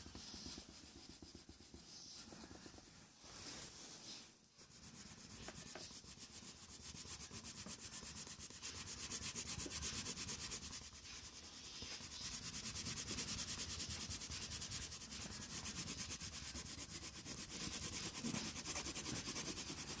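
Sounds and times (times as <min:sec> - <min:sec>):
pencil scratching on paper: 0:00.0 - 0:02.9, 0:04.7 - 0:20.0.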